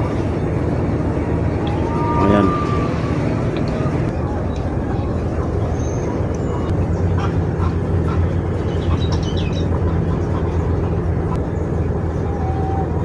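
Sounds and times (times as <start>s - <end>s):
low motor hum: 0.0s - 13.0s.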